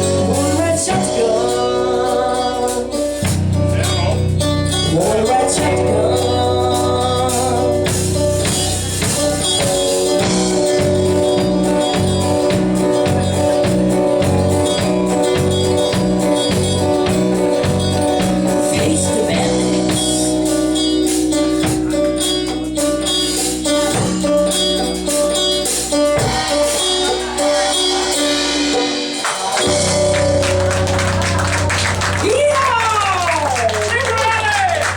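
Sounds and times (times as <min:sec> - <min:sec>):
person singing: 0:00.0 - 0:03.4, 0:04.7 - 0:12.0, 0:14.2 - 0:22.3, 0:25.8 - 0:30.2
live country band playing: 0:00.0 - 0:34.9
pulsing bass rhythm: 0:00.0 - 0:34.9.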